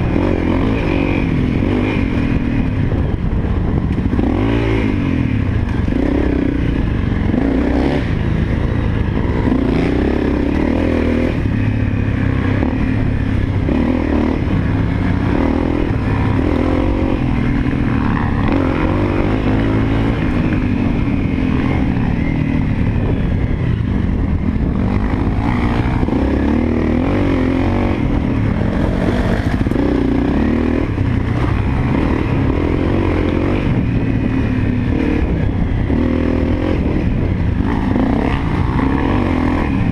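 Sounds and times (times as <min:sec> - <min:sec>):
dirt bike engine revving: 0:00.0 - 0:39.9.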